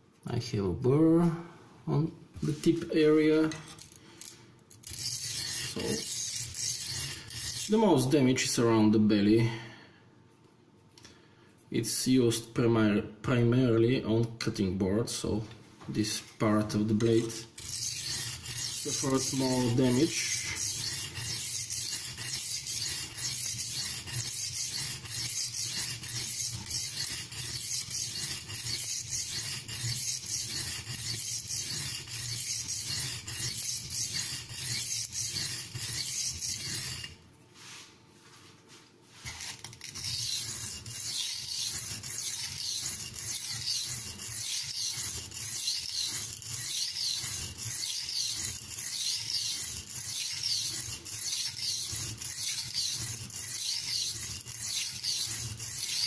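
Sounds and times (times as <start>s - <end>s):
knife scraping on sharpening stone: 4.8s - 8.1s, 17.1s - 37.2s, 39.2s - 56.0s.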